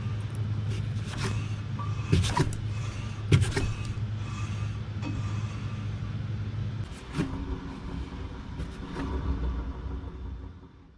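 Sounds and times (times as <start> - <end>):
low rumble: 2.8 - 10.9
car cabin drone: 6.8 - 10.9.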